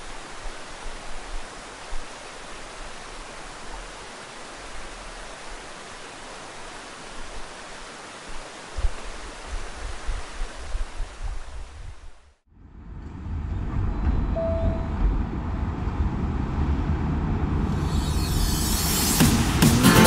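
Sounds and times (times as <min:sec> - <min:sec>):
wind buffeting microphone: 0:08.3 - 0:12.3
outdoor rushing noise: 0:12.6 - 0:20.0.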